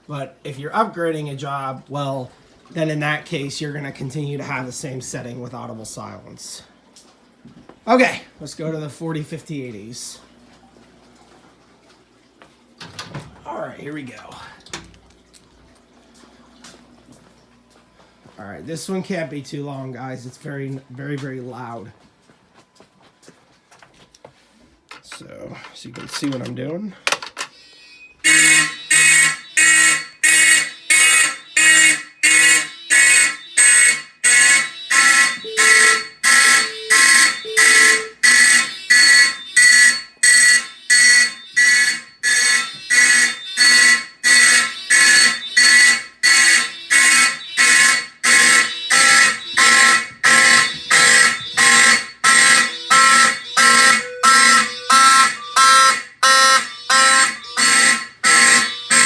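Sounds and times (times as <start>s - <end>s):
fire alarm horns pulsing: 27.5s - 59.0s.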